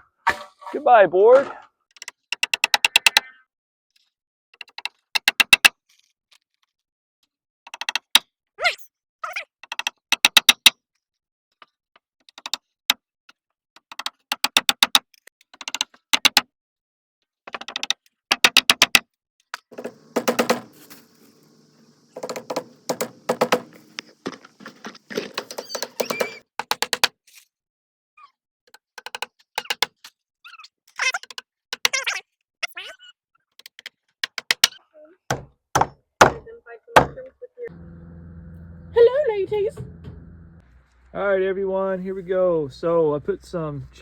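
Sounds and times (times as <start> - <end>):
rapid sharp clicks: 19.8 - 24.5.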